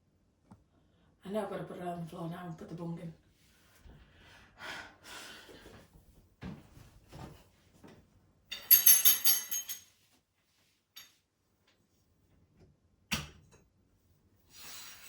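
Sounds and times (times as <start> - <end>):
metal hooks jangling on rail: 8.5 - 9.9.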